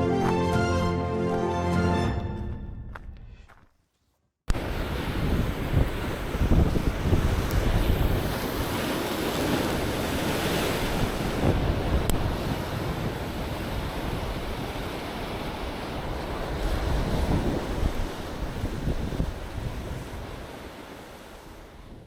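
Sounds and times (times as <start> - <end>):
ocean surf washing ashore: 4.5 - 22.0
wind rumbling on microphone: 4.5 - 22.0.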